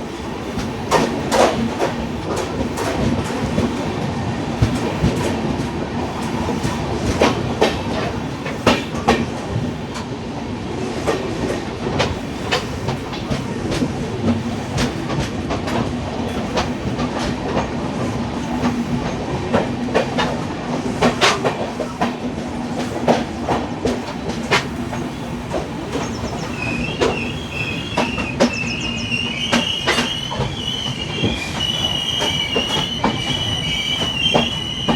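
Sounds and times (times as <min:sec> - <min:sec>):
train coaches rumbling on rails: 0:00.0 - 0:34.9
wheels clacking over rail joints: 0:00.0 - 0:34.9
high-pitched wheel squeal: 0:26.1 - 0:34.9.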